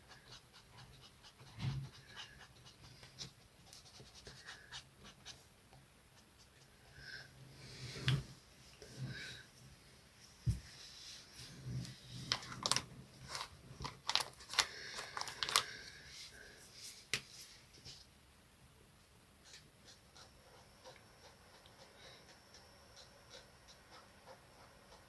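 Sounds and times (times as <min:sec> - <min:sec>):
scratchy coloring strokes: 0:00.0 - 0:05.5, 0:19.4 - 0:25.0.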